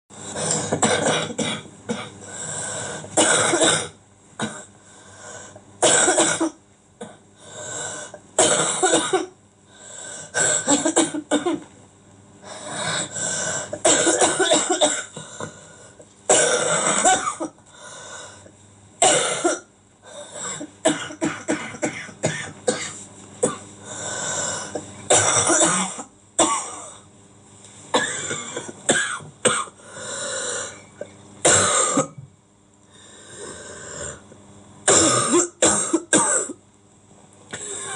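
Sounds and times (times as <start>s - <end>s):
person coughing hard: 0.4s - 2.2s, 3.2s - 4.7s, 5.8s - 7.2s, 8.4s - 9.4s, 10.3s - 11.7s, 13.7s - 15.3s, 16.3s - 17.6s, 19.0s - 19.7s, 20.3s - 23.7s, 24.6s - 27.0s, 27.9s - 29.8s, 31.4s - 32.2s, 34.8s - 36.6s.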